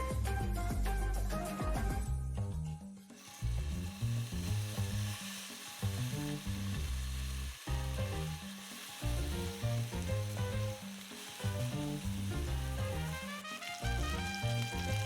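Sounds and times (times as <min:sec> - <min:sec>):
latin music with plucked notes: 0:00.0 - 0:15.0
food sizzling in a pan: 0:03.1 - 0:15.0.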